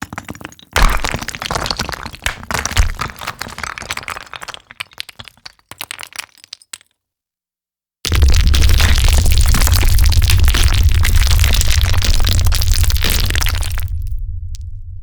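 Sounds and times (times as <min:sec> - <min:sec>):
rocks and debris clattering: 0:00.0 - 0:06.9, 0:08.1 - 0:14.1
heavy low thud: 0:12.3 - 0:15.0.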